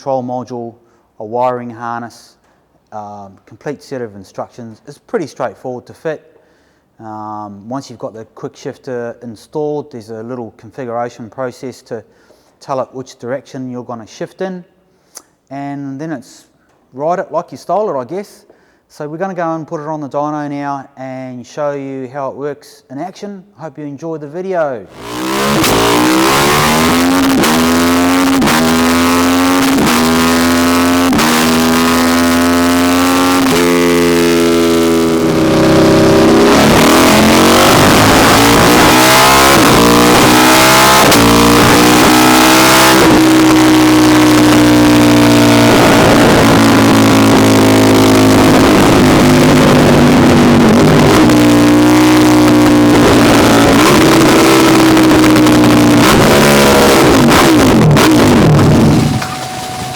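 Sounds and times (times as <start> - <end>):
motorcycle engine revving at full throttle: 24.9 - 59.7.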